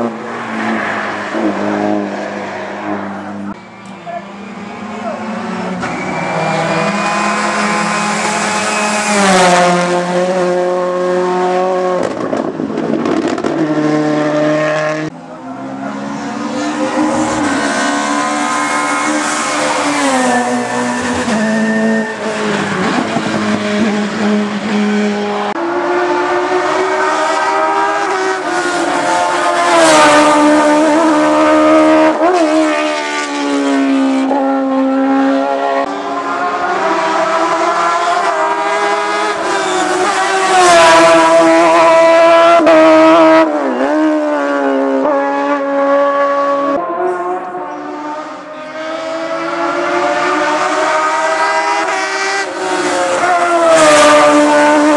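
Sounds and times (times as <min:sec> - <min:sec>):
rally car engines at full throttle: 0:00.0 - 0:54.9
tyre squeal: 0:05.8 - 0:09.2, 0:17.0 - 0:23.0, 0:39.4 - 0:40.5.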